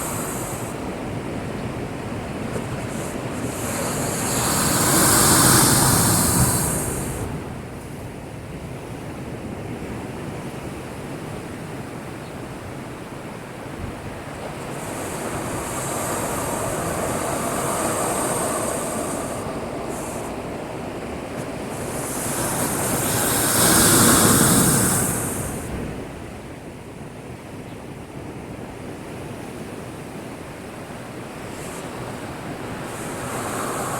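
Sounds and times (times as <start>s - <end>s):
heavy surf breaking: 0.0s - 8.1s, 12.5s - 26.5s, 30.4s - 33.9s.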